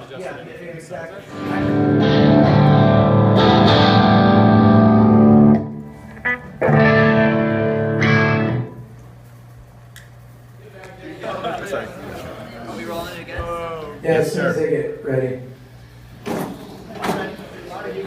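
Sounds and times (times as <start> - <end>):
low amp hum: 1.2 - 16.9
distorted electric guitar chords: 1.3 - 9.5.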